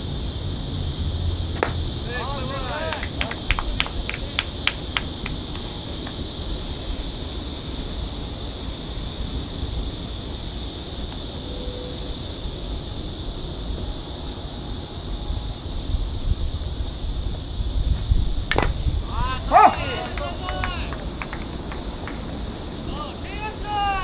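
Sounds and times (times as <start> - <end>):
insect chorus: 0.0 - 24.0
wind rumble on microphone: 3.5 - 20.0.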